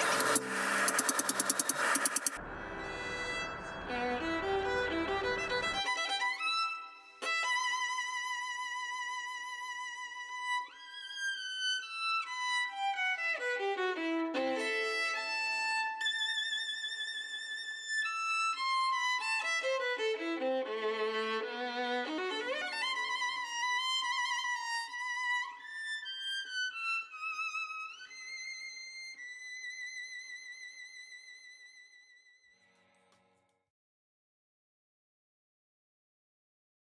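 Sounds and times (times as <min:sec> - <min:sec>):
solo violin melody: 0:02.7 - 0:32.0.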